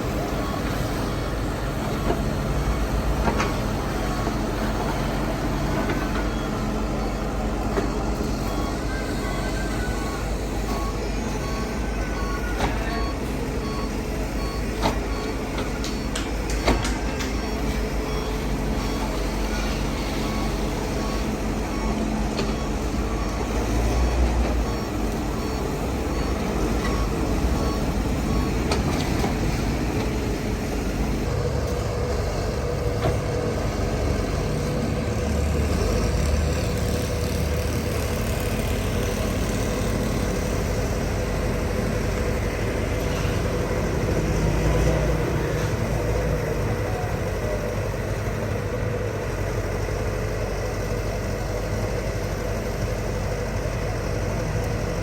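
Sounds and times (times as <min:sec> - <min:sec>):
backup alarm beeping: 0:00.0 - 0:36.0
diesel engines running: 0:00.0 - 0:55.0.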